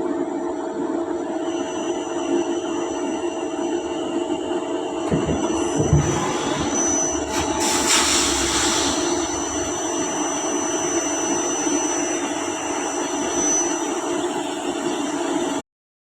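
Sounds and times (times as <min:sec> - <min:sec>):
machine rushing with whine: 0:05.0 - 0:15.6.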